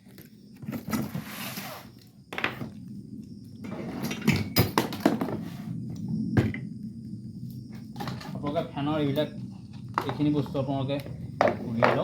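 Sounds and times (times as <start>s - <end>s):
rustle: 0.0s - 2.5s.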